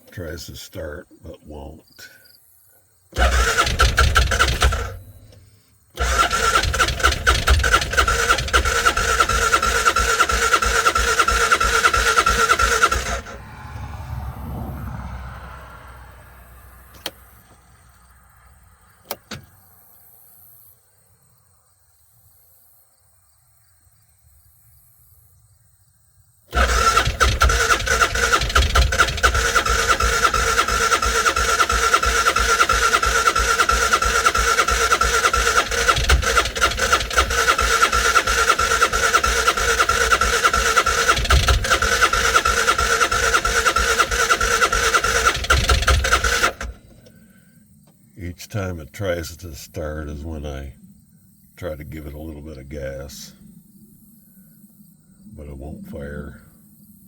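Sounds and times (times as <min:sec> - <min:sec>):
engine cranking without starting: 0:03.1 - 0:17.8, 0:19.0 - 0:19.5, 0:26.5 - 0:48.0
sharp mechanical clicks: 0:03.2 - 0:05.4, 0:06.0 - 0:13.2, 0:26.5 - 0:47.1.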